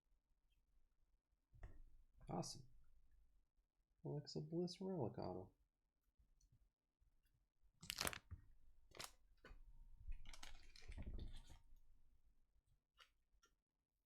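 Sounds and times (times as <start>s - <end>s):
trading cards and wrappers crinkling: 7.8s - 8.3s, 8.9s - 9.2s, 10.1s - 11.6s.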